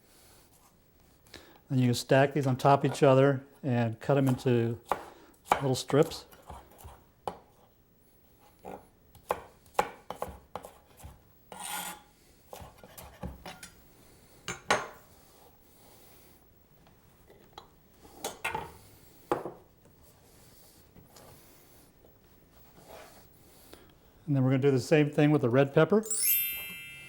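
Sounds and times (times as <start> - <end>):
knife chopping on cutting board: 4.2 - 7.5, 9.2 - 13.6.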